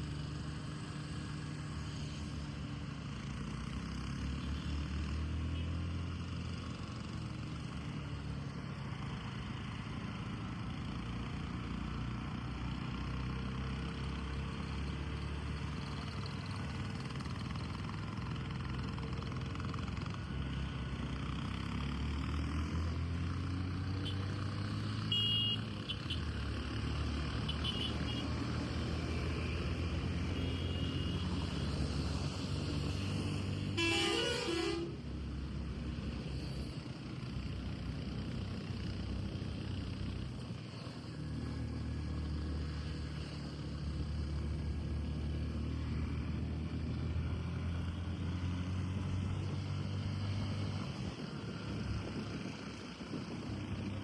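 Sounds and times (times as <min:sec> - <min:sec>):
vehicle engine and road rumble: 0:00.0 - 0:54.0
car horn honk: 0:25.1 - 0:26.2, 0:27.5 - 0:28.3, 0:30.4 - 0:31.3, 0:33.8 - 0:35.0.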